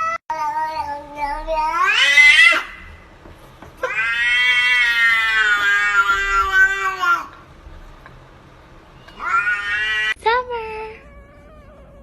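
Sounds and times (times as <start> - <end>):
cat meowing: 0.0 - 3.0, 3.8 - 7.4, 8.9 - 10.2, 10.9 - 12.0.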